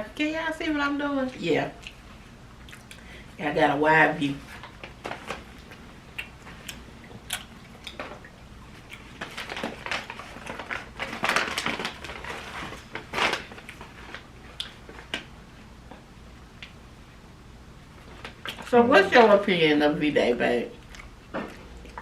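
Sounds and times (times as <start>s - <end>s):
food crunching: 8.8s - 15.3s, 20.7s - 22.0s
rustling: 9.0s - 15.3s.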